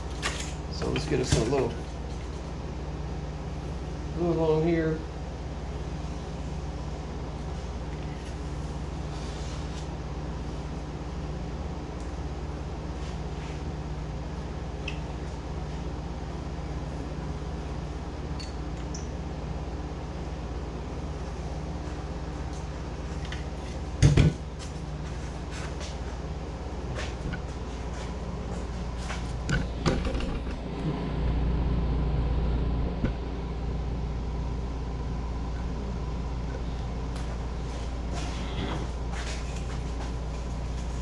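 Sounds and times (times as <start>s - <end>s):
steady low hum: 0.0s - 41.0s
knocks and clatter at workbench: 24.0s - 24.4s.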